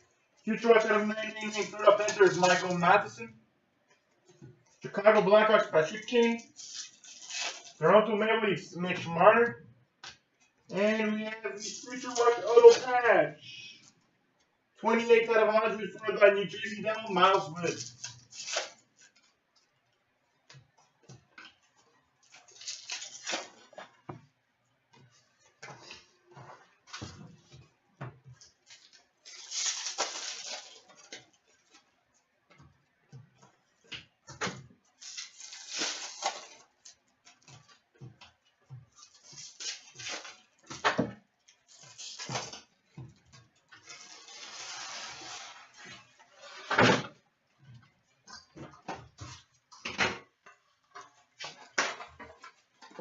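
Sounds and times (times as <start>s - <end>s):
foil wrappers crinkling: 0.4s - 3.2s, 5.8s - 8.2s, 10.8s - 13.0s, 14.9s - 19.4s, 21.7s - 23.8s, 28.4s - 31.9s, 34.9s - 37.9s, 38.9s - 40.8s, 41.4s - 46.6s.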